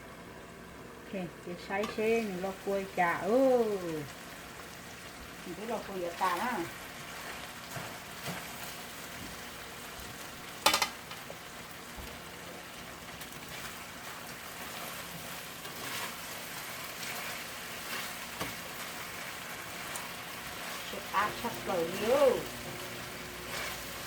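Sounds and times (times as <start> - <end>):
chicken wings sizzling in a pan: 1.3 - 24.0.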